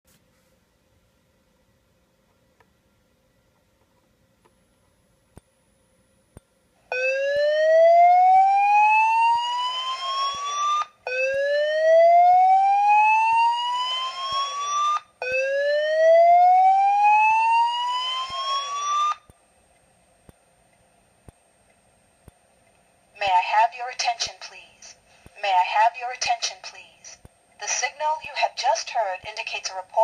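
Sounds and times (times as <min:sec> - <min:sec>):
slow-whoop alarm tone: 0:06.9 - 0:19.3.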